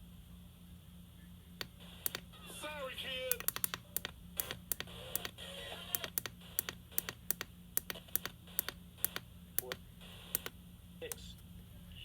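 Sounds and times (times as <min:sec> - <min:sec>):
keyboard typing: 0:03.3 - 0:05.4, 0:06.0 - 0:09.8.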